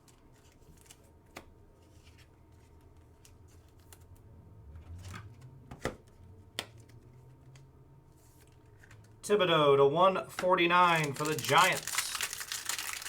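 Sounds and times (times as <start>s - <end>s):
cards rustling: 10.3s - 13.0s.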